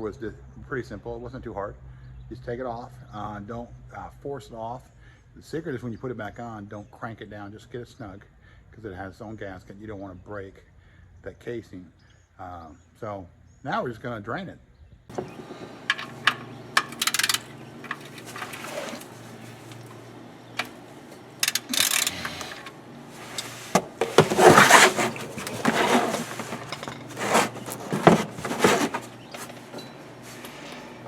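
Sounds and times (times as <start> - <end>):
tools scraping and clattering: 15.1 - 31.0.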